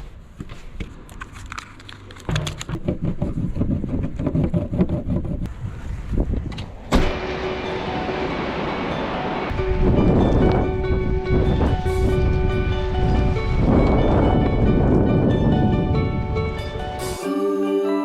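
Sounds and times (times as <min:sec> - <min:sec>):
sudden hit: 0:06.8 - 0:14.1
steady music: 0:07.0 - 0:18.0.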